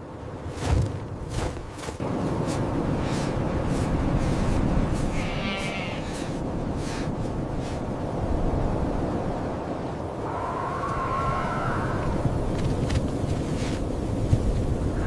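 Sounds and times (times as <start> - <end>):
wind rushing: 0.2 - 15.0
sheep bleating: 5.1 - 6.1.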